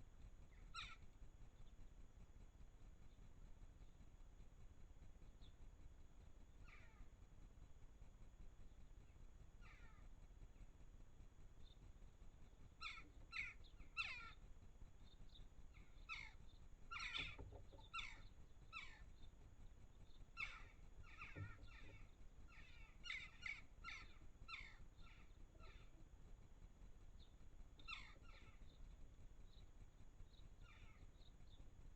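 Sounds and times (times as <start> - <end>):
birds calling harshly: 0.5 - 1.0, 6.6 - 7.0, 9.6 - 10.1, 12.8 - 14.4, 15.3 - 19.2, 20.4 - 26.0, 27.8 - 28.8, 30.3 - 31.3.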